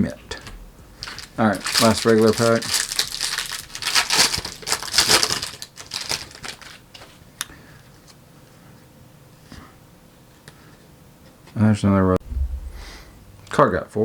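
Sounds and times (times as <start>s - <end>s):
foil wrapper tearing and crinkling: 1.0s - 7.2s.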